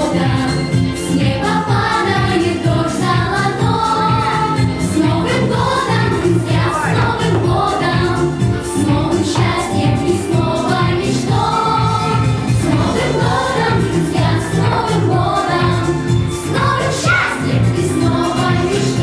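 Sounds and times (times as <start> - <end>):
voices singing together: 0.0 - 19.0
instrumental backing with beat: 5.0 - 19.0.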